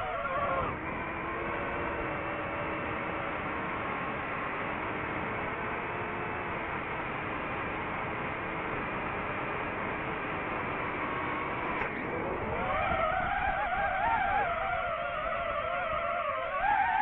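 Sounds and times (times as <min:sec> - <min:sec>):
drone propellers whining: 0:00.0 - 0:03.6, 0:10.8 - 0:17.0.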